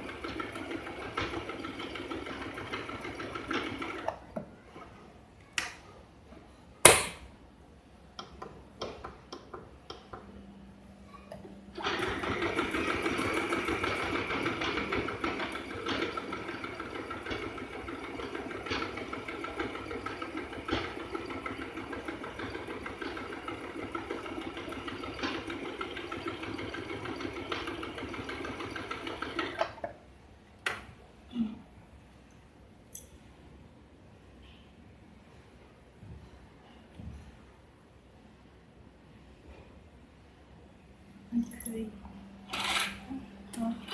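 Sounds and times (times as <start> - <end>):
sewing machine stitching: 0.0 - 4.2, 11.7 - 29.9, 42.5 - 43.0.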